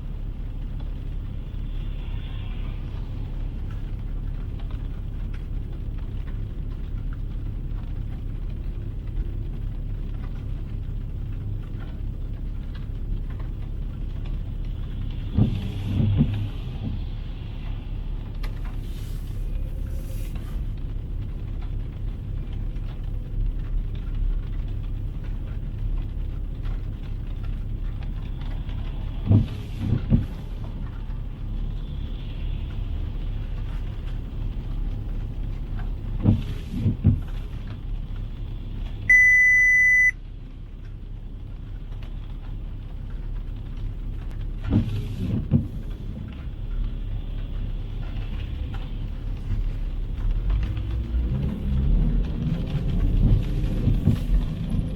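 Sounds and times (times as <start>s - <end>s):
road traffic rumble: 0.0s - 54.9s
thuds: 15.3s - 17.1s
loud high electronic beep: 39.1s - 40.1s.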